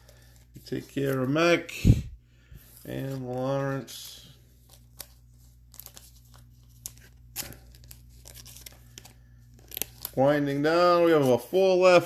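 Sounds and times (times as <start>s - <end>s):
wrapper plastic crinkling and tearing: 4.6s - 10.2s.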